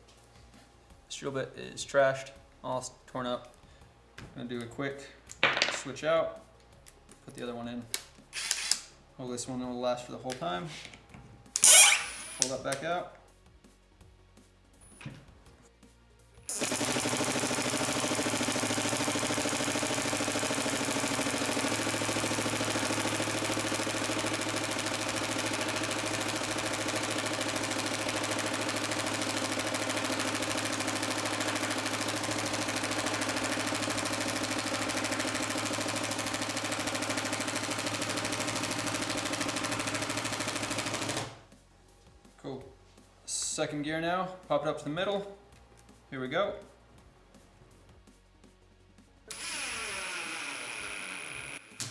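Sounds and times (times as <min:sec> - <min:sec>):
impact driver hammering: 0:11.6 - 0:12.6, 0:16.5 - 0:41.3.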